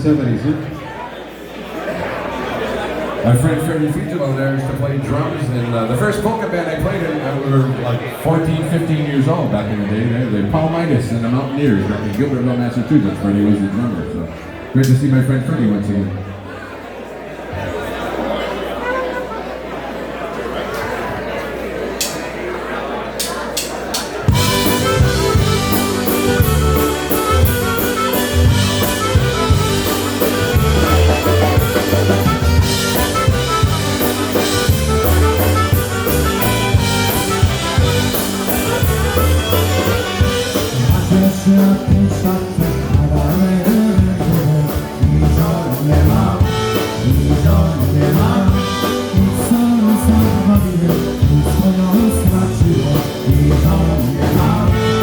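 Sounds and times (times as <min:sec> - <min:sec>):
polka band playing: 0:23.6 - 0:55.0
drum kit beat: 0:24.3 - 0:55.0.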